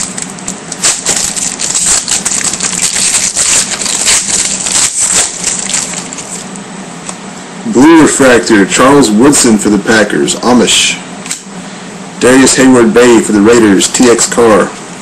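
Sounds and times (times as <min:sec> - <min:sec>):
cards and wrapper crinkling: 0:00.0 - 0:06.5.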